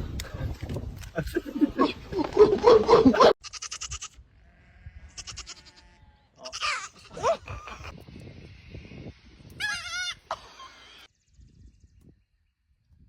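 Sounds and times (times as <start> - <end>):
animal bleating: 3.4 - 7.9.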